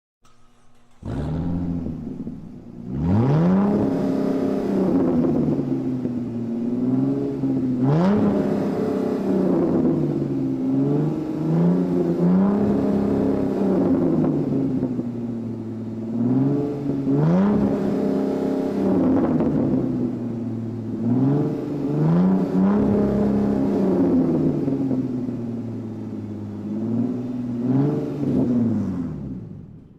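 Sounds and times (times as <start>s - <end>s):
sports car engine revving: 0.2s - 29.9s.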